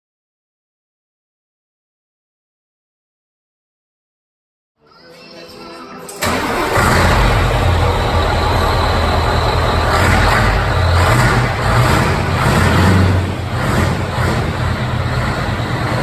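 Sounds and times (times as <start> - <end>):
truck engine droning: 6.1 - 16.0.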